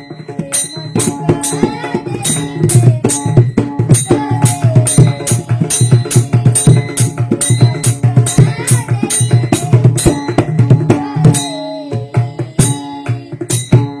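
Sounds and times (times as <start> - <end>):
hand drum rhythm: 0.0 - 14.0
person singing: 0.0 - 14.0.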